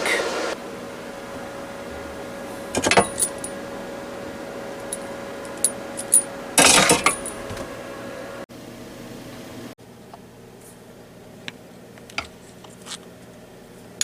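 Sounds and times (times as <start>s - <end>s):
faint steady hum: 0.0s - 14.0s
fuel line rattle: 2.7s - 3.6s, 4.8s - 7.7s
glass jar clinking: 2.8s - 3.5s.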